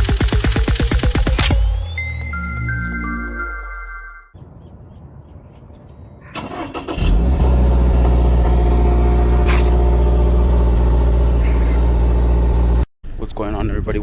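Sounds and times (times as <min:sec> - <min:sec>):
car engine cranking and idling: 0:06.4 - 0:12.9.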